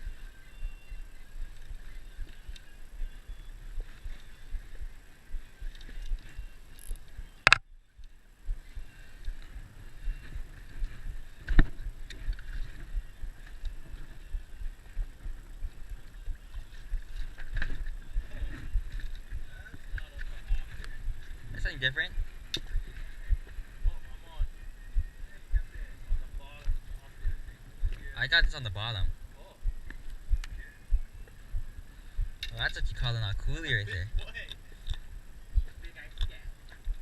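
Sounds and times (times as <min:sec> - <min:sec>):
faint steady high tone: 0:00.0 - 0:22.3
water and wind rumble: 0:00.0 - 0:37.0.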